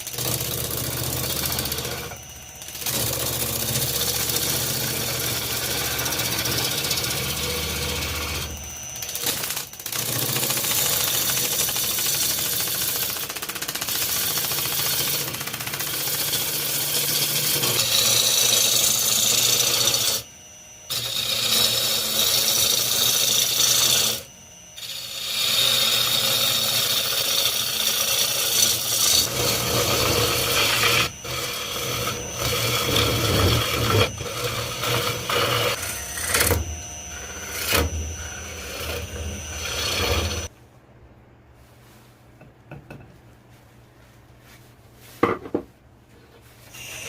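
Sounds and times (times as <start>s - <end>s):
rasping scrape on wood: 0.0s - 13.1s, 20.9s - 40.5s
steady high whine: 0.2s - 13.1s, 15.9s - 27.2s, 28.4s - 40.6s.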